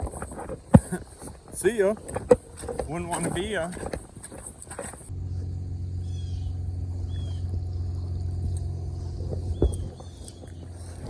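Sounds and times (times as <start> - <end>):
low mechanical motor hum: 1.4 - 11.0.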